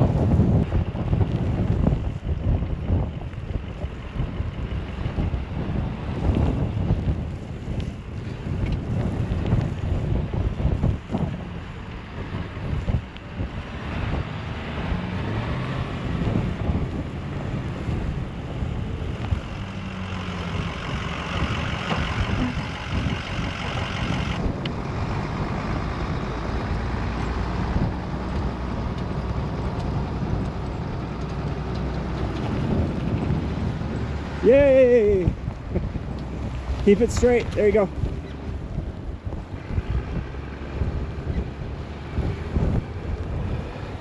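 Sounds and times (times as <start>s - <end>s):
vehicle engine running: 0.0s - 44.0s
wind buffeting microphone: 0.0s - 44.0s.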